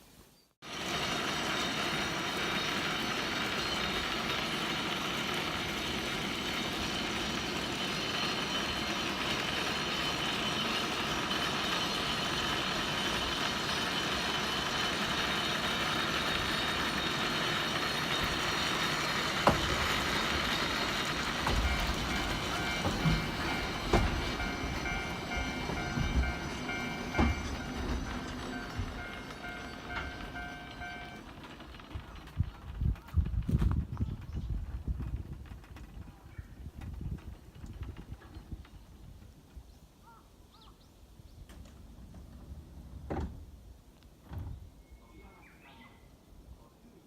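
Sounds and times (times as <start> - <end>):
rumbling rail noise: 0.6 - 40.2, 41.3 - 45.6.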